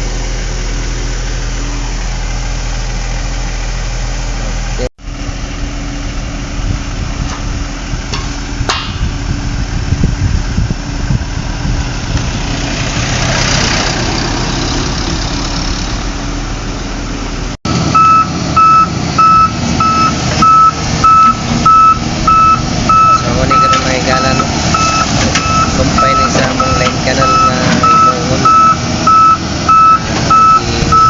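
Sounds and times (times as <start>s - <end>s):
heavy machinery engine running: 0.0s - 31.0s
reversing alarm beeping: 17.9s - 31.0s.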